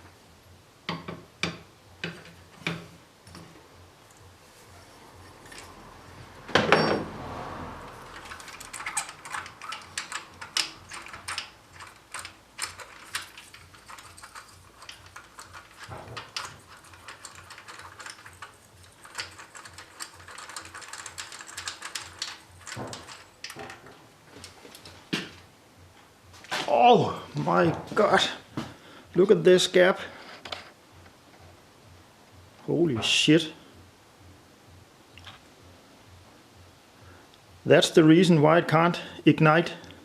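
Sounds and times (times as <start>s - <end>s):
loud metal clank: 6.5s - 7.2s.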